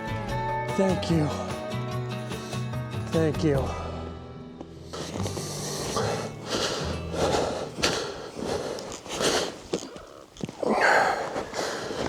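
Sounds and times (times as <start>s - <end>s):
person breathing hard: 4.9s - 12.0s.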